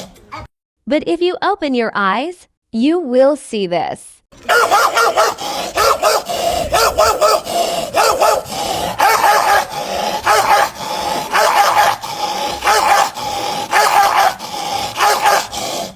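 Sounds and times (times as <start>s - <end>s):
dog barking and yapping: 4.4s - 15.6s
dog growling: 4.5s - 15.9s.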